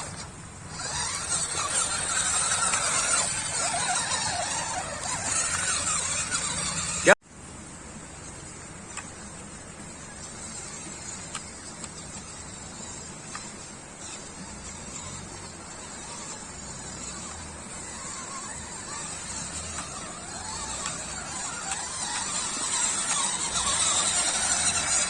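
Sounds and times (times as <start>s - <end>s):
faint clicks: 8.9s - 17.4s.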